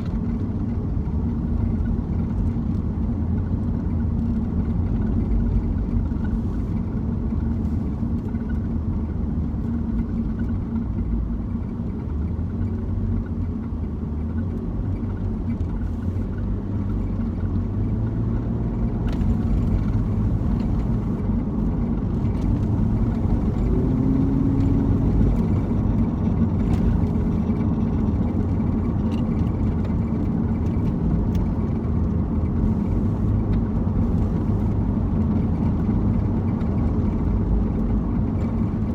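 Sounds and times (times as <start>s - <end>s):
car road and engine rumble: 0.0s - 38.9s.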